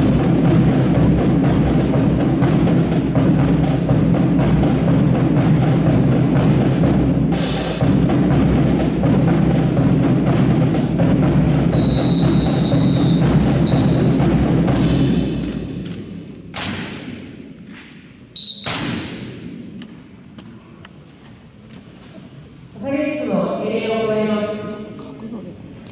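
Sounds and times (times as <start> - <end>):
percussion-heavy music with drums: 0.0 - 19.8
sharp cracks with long echo: 14.6 - 20.3.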